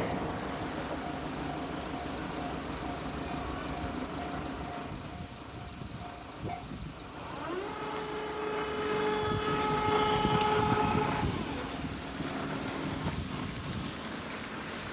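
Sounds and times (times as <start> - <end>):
train rumble: 0.0 - 14.9
train horn: 7.5 - 11.7.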